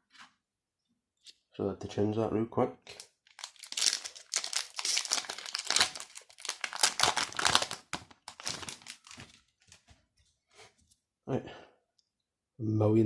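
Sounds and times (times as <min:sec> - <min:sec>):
foil wrapper tearing and crinkling: 0:02.9 - 0:09.7.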